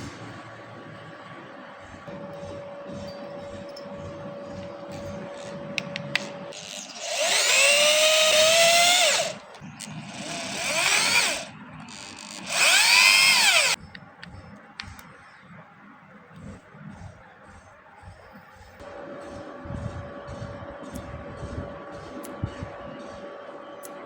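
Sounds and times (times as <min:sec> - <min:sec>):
electric drill whining: 0:06.2 - 0:13.8.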